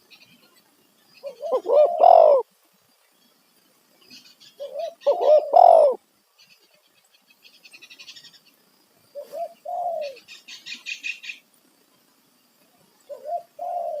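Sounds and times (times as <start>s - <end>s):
small bird chirping trill: 0.0s - 12.1s
dove cooing: 1.2s - 2.5s, 4.6s - 6.0s, 9.1s - 11.2s, 13.0s - 14.0s.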